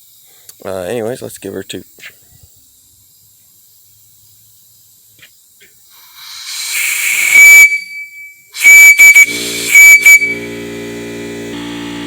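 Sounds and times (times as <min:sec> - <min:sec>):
steady mechanical hum: 0:00.0 - 0:12.0
rush of valve opening: 0:05.9 - 0:10.4
shrill whistle blasts: 0:06.2 - 0:10.6.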